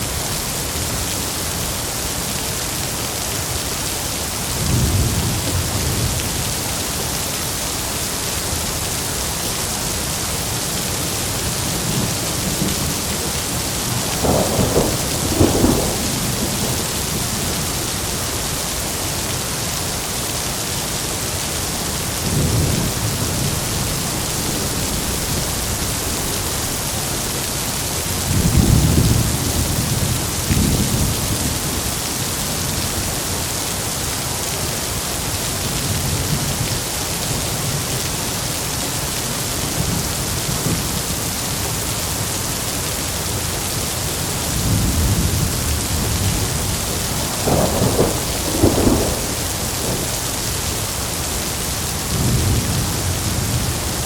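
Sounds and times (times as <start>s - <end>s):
heavy rain hissing: 0.0s - 54.0s
thunder rumbling: 11.5s - 18.3s, 44.5s - 51.1s.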